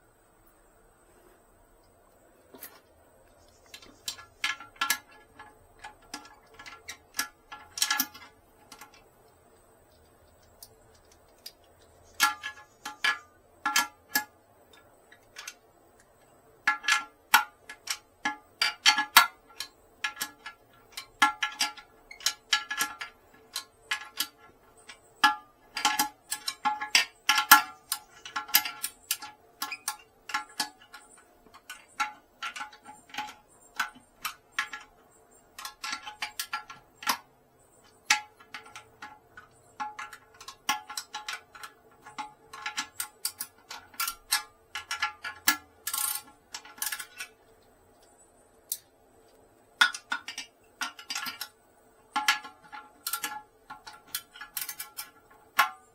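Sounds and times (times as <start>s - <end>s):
ratchet wrench clicking: 42.6s - 47.3s.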